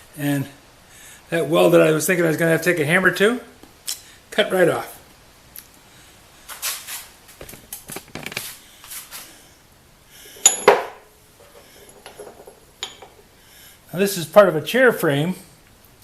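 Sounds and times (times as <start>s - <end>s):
metal clank ringing: 10.4s - 11.1s, 12.0s - 13.2s.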